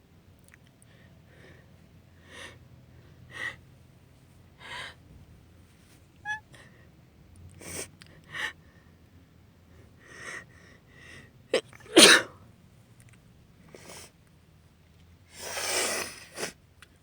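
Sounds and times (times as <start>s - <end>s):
woman sneezing: 11.9s - 12.4s.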